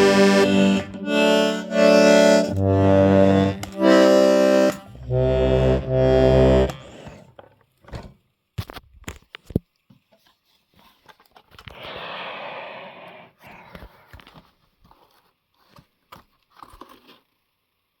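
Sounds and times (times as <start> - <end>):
melodeon chord: 0.0 - 6.8
breathy hiss: 11.8 - 13.9.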